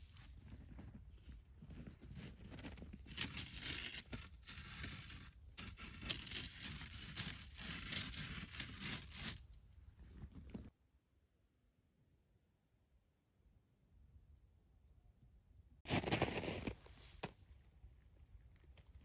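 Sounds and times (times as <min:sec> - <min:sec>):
rustling and crunching: 0:00.0 - 0:10.7, 0:15.9 - 0:19.0.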